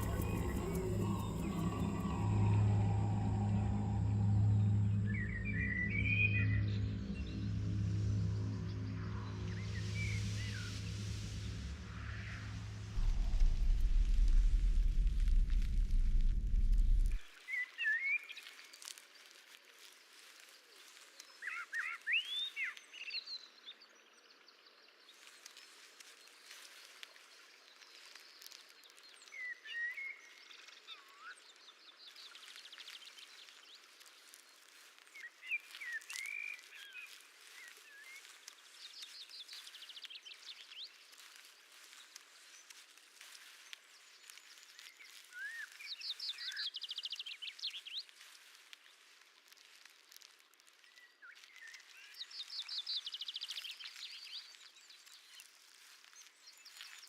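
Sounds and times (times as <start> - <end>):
birds chirping and trilling: 0.0 - 17.2
deep rumble: 0.0 - 17.2.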